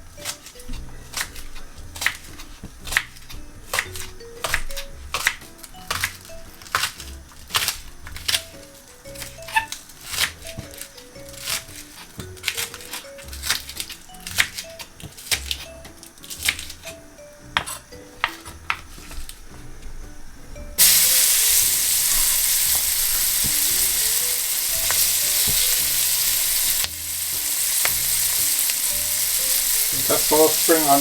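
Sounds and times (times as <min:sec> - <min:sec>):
knife chopping on a board: 0:00.2 - 0:08.6, 0:17.6 - 0:19.3, 0:24.8 - 0:26.1
onions sizzling in hot oil: 0:20.8 - 0:31.0.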